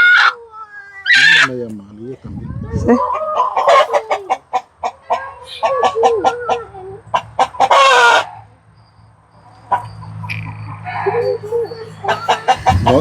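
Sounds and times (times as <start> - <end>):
chicken harsh squawk: 0.0 - 0.4, 1.0 - 1.6, 3.0 - 8.4, 10.8 - 13.0
chickens clucking: 2.3 - 8.5, 9.4 - 13.0.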